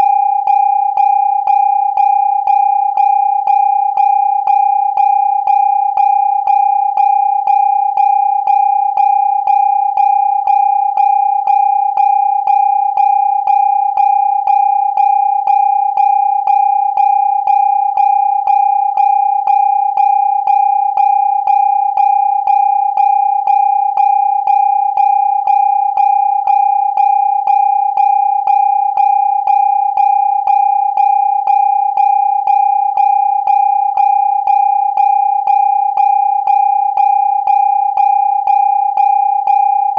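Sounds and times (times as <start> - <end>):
pulsing electronic siren tone: 0.0 - 2.7.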